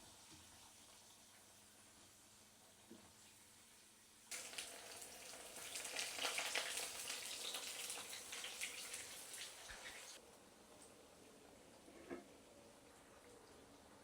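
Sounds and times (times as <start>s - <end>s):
food sizzling in hot oil: 4.3s - 10.2s.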